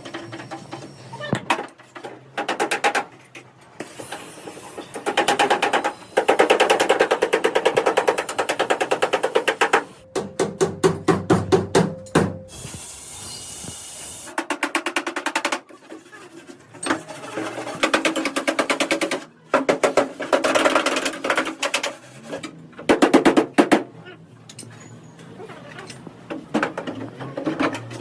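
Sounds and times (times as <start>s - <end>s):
pneumatic tool rattling: 3.8s - 10.0s.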